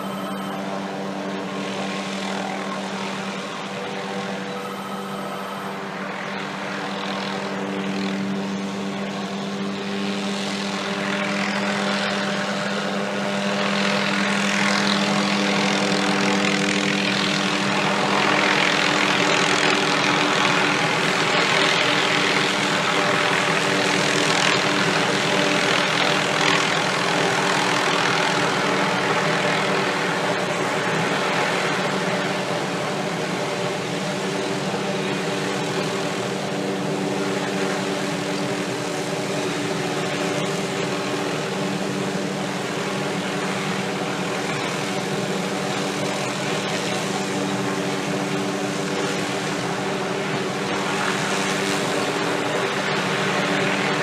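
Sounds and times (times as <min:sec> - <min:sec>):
helicopter droning: 0:00.0 - 0:54.0.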